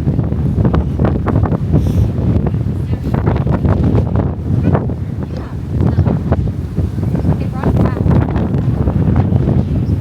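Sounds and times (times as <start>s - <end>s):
wind buffeting microphone: 0.0s - 10.0s.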